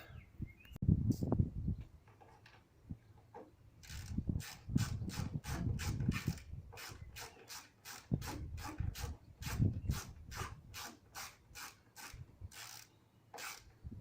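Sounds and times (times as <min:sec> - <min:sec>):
ratchet spanner clicking: 0:10.8 - 0:13.7.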